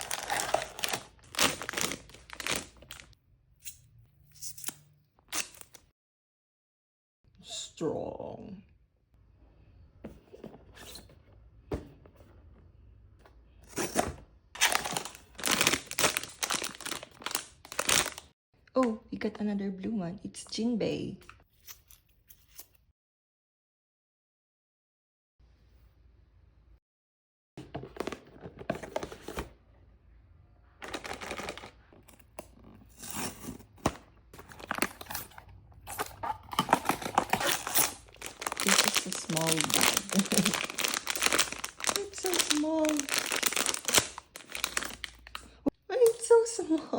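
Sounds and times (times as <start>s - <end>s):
foil bag crinkling and tearing: 0.0s - 3.1s, 14.6s - 18.3s, 34.4s - 45.5s.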